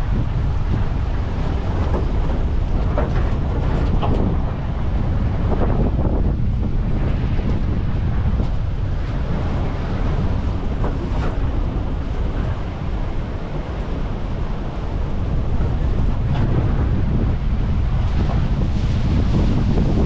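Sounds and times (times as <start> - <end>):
wind buffeting microphone: 0.0 - 20.0.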